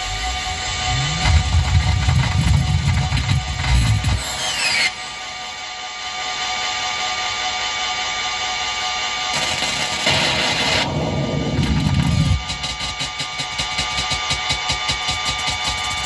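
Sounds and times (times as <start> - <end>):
low synth swell: 0.0 - 3.2
distorted synthesizer drone: 0.0 - 5.6, 9.4 - 14.6.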